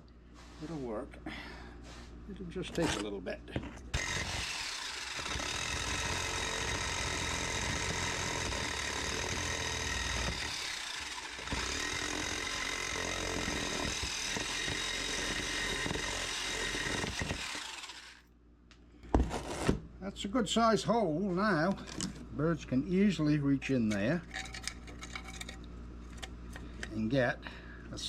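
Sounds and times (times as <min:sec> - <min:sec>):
power tool whining cutting metal: 0:03.9 - 0:18.2.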